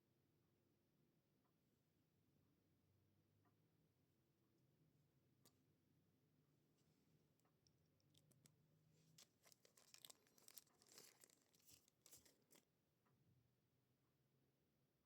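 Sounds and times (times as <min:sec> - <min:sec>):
packaging crinkling and tearing: 0:08.1 - 0:12.6.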